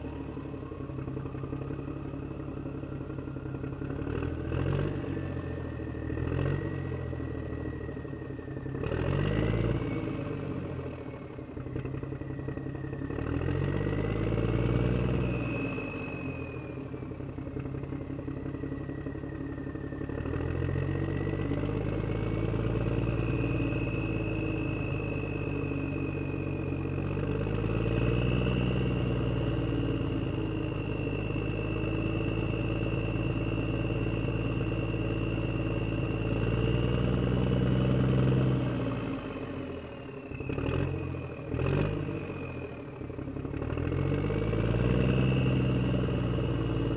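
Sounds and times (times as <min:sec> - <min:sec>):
truck engine revving: 0:40.4 - 0:42.5, 0:43.5 - 0:46.9.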